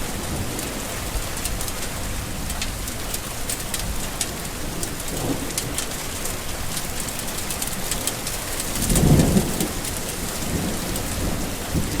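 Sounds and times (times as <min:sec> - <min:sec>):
rain pattering: 0:00.0 - 0:12.0
thunder rumble: 0:08.8 - 0:12.0.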